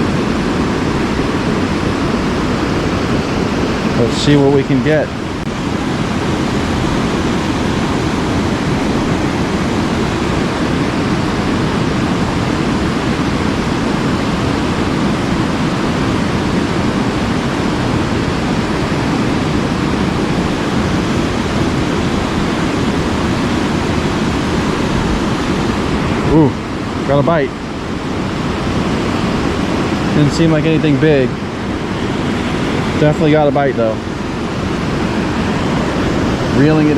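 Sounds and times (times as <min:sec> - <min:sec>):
waterfall rushing: 0:00.0 - 0:36.9.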